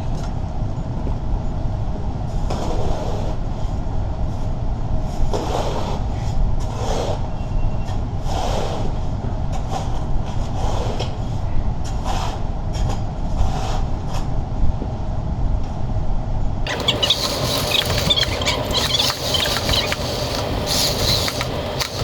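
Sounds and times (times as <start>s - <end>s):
spade scraping debris from grate: 16.7s - 22.0s.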